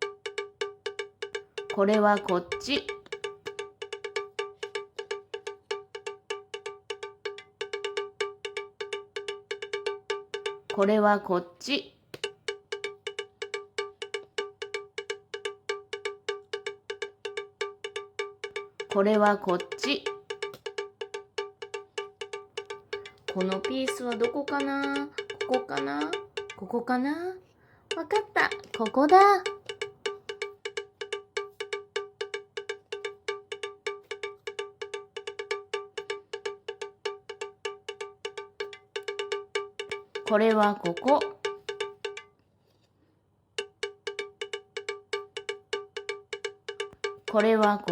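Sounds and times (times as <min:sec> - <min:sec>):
cowbell-like percussion strikes: 0:00.0 - 0:11.4, 0:12.2 - 0:27.3, 0:27.9 - 0:42.3, 0:43.6 - 0:47.9
repeated bell-like note: 0:22.7 - 0:26.8.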